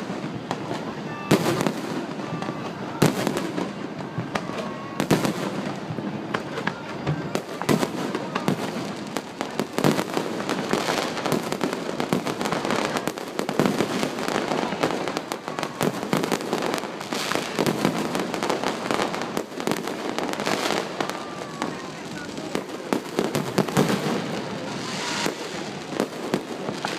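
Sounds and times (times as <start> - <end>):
fireworks bangs and crackling: 0.0 - 26.9.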